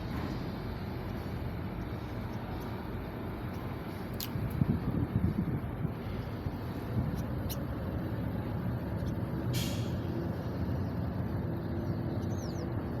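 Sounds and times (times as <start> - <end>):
ship engine rumbling: 0.0 - 13.0
short hiss: 9.6 - 10.0.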